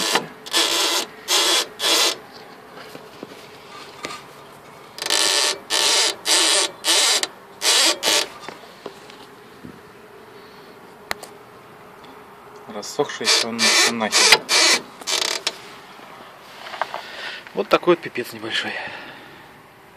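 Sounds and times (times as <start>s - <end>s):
harsh creaking squeaks: 0.0s - 2.2s, 5.0s - 8.5s, 13.1s - 15.6s.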